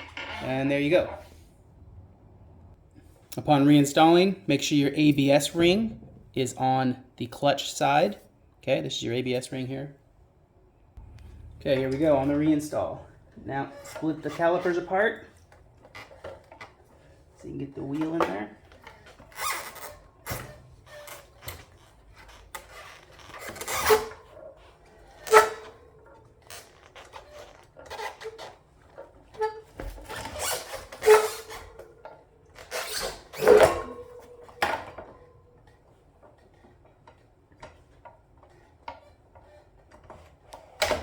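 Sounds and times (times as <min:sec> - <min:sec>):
wheel knocks and scrapes: 0:00.0 - 0:01.4, 0:11.0 - 0:41.0.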